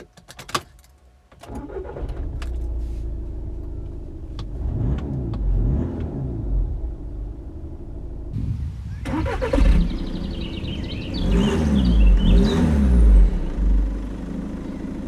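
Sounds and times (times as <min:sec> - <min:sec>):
diesel engine starting and running: 0:01.4 - 0:15.0
engine revving: 0:04.5 - 0:07.1, 0:08.3 - 0:15.0.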